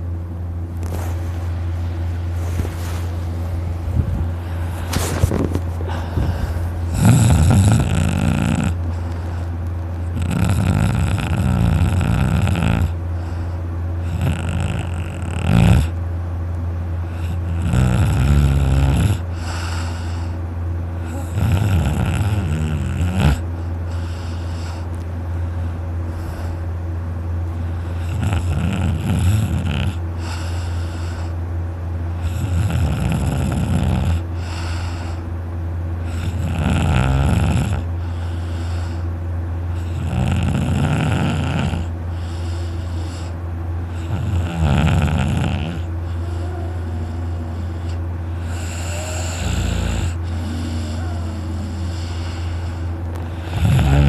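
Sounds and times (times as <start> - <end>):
man snoring loudly: 6.9 - 8.8, 10.1 - 13.0, 14.0 - 16.0, 17.1 - 20.4, 21.0 - 23.4, 27.9 - 30.6, 32.2 - 35.2, 36.0 - 38.9, 39.8 - 54.0.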